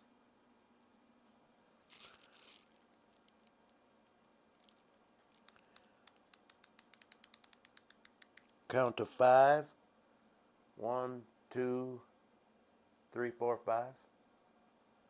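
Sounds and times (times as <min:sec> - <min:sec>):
soft rustle: 0:00.1 - 0:06.0
insulin pen clicks: 0:05.4 - 0:08.6.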